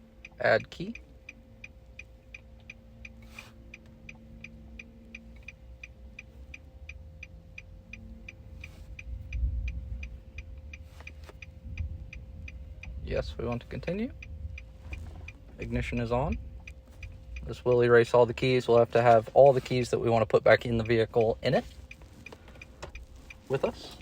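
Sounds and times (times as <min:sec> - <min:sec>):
low steady hum: 0:00.0 - 0:24.0
low rumble: 0:03.9 - 0:18.4.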